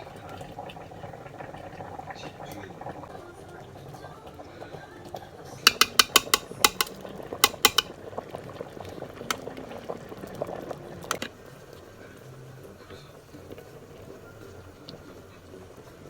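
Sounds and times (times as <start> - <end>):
metal utensil clinking against pot: 5.7 - 7.9.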